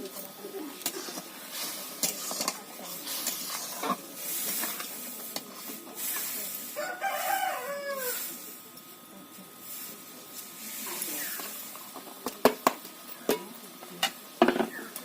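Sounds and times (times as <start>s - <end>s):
steady hiss: 0.0s - 15.0s
rooster crowing: 6.7s - 8.3s.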